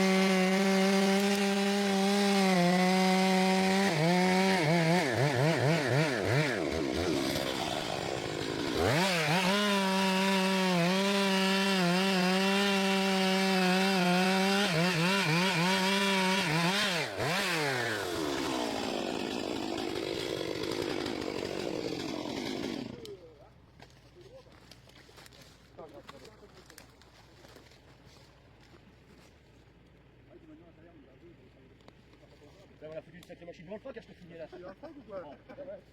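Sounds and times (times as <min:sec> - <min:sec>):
chainsaw cutting wood: 0:00.0 - 0:23.2
chainsaw revving: 0:00.0 - 0:23.2.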